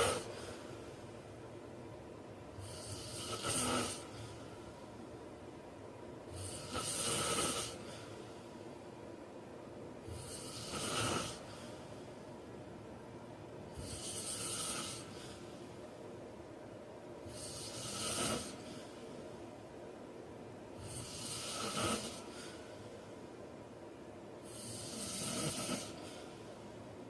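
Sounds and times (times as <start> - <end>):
man snoring: 0.0 - 0.5, 2.5 - 4.5, 6.3 - 8.1, 10.0 - 11.7, 13.7 - 15.3, 17.3 - 18.8, 20.8 - 22.6, 24.4 - 26.3.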